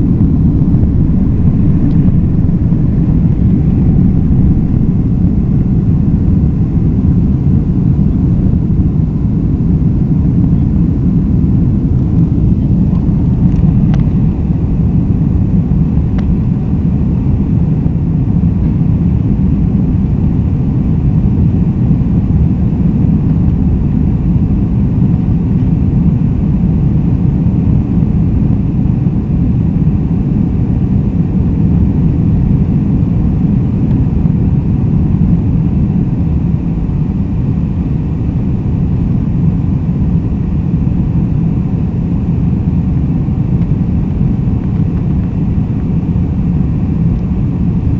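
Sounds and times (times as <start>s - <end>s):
jet engines rumbling: 0.0s - 47.9s.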